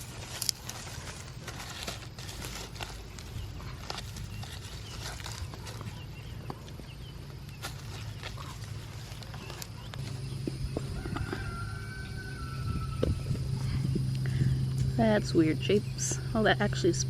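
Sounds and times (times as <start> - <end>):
digging in soil by hand: 0.0 - 11.7
steady low hum: 0.0 - 17.0.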